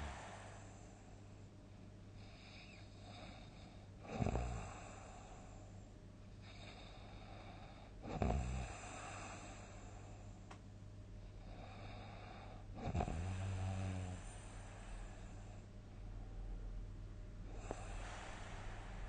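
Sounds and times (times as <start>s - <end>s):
person snoring loudly: 0.0s - 0.6s, 12.8s - 14.2s
soft breathing: 0.0s - 4.0s, 4.6s - 8.0s, 8.6s - 10.5s, 11.2s - 16.4s, 17.4s - 19.0s.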